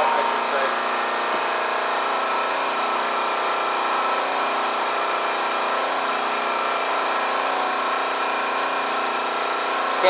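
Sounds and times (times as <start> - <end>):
machine humming: 0.0 - 10.0.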